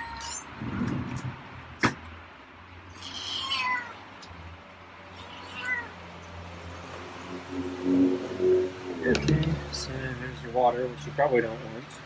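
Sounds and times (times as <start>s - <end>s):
cat meowing: 2.9s - 4.0s, 5.1s - 6.0s.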